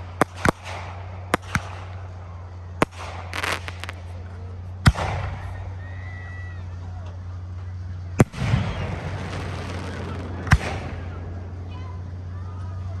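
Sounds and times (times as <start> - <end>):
fireworks bangs: 0.0 - 2.1, 2.8 - 4.1, 8.2 - 11.8
fireworks crackling burst: 0.0 - 4.2, 8.2 - 11.2
low steady hum: 0.0 - 13.0.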